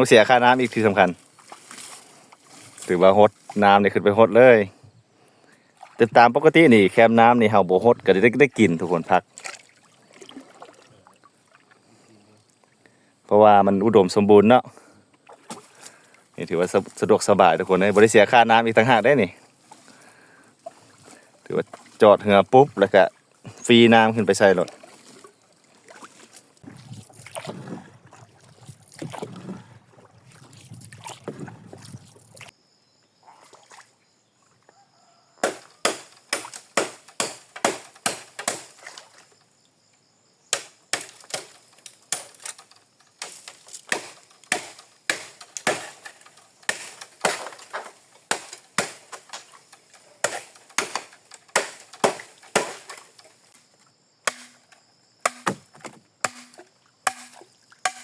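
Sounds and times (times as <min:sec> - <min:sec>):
water splashing and sloshing: 0:00.1 - 0:03.8, 0:05.6 - 0:07.0, 0:08.0 - 0:12.8, 0:15.2 - 0:18.2, 0:19.5 - 0:32.5, 0:33.2 - 0:34.1, 0:36.0 - 0:39.6, 0:41.0 - 0:58.0
sharp chopping strikes: 0:35.4 - 0:38.8, 0:40.5 - 0:42.4, 0:43.2 - 0:49.2, 0:50.2 - 0:53.0, 0:54.2 - 0:58.0.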